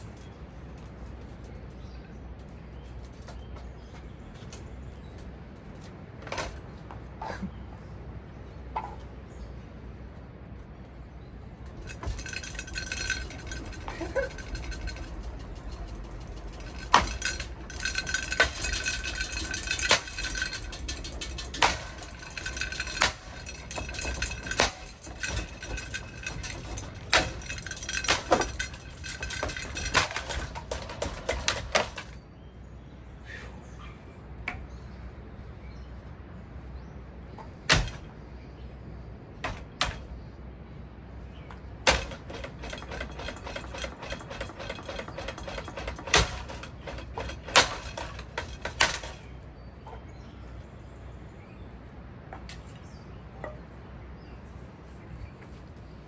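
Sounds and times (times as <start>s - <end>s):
metallic clattering and clanking: 11.6s - 32.2s, 37.4s - 38.1s, 41.5s - 50.3s.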